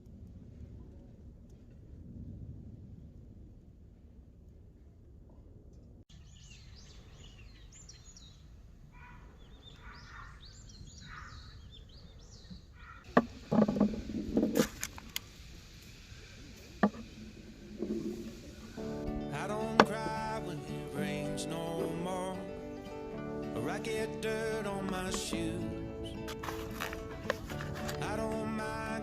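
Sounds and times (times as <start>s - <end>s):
small birds chirping: 6.1s - 13.2s.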